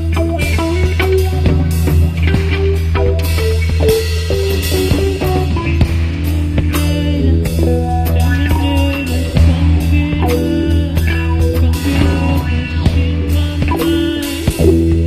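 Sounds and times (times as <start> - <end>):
rock band playing: 0.0 - 15.0.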